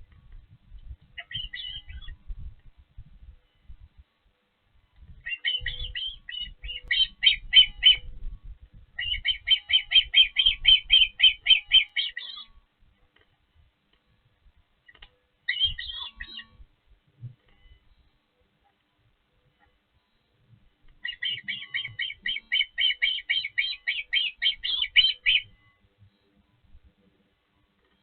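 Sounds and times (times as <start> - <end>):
osprey sharp high chirps: 1.2 - 2.5, 5.1 - 8.4, 9.0 - 12.6, 14.9 - 16.6, 21.0 - 26.2.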